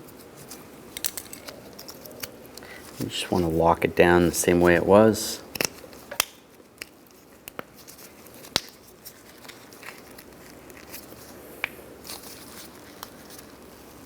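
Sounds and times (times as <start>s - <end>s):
handling rustle: 0.0s - 14.0s.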